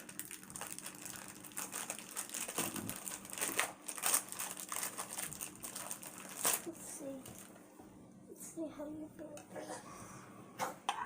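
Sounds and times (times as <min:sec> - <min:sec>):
packaging crinkling and rustling: 0:00.0 - 0:07.6.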